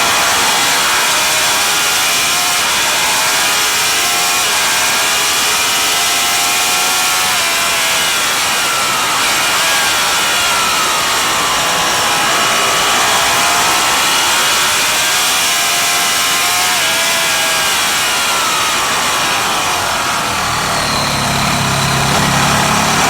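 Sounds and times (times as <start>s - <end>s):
motorcycle engine revving: 15.8s - 23.0s.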